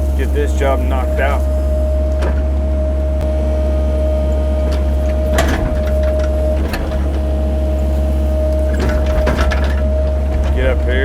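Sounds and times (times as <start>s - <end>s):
excavator diesel engine whining: 0.0s - 11.0s
knocks and clatters: 4.4s - 11.0s.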